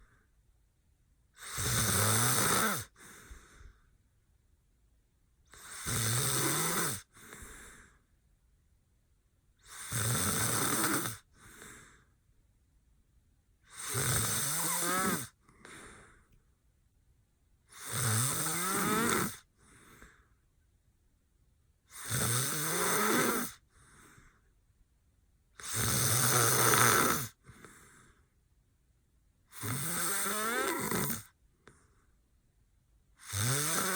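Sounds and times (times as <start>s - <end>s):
man snoring loudly: 1.4s - 3.0s, 5.5s - 7.4s, 9.6s - 11.2s, 13.7s - 15.9s, 17.7s - 19.4s, 21.9s - 23.6s, 25.6s - 27.4s, 29.5s - 31.4s, 33.2s - 33.9s.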